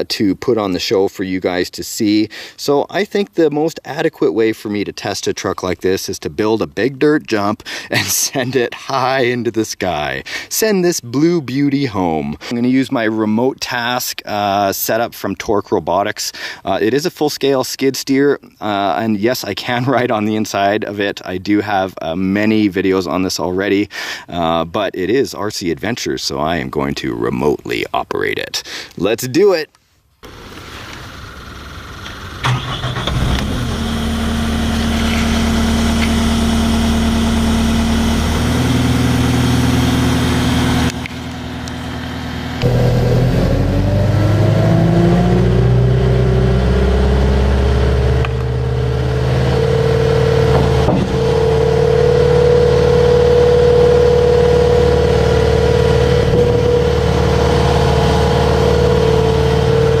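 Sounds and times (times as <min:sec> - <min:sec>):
engine revving up: 0:30.2 - 1:00.0
skid steer engine starting and idling: 0:30.2 - 1:00.0.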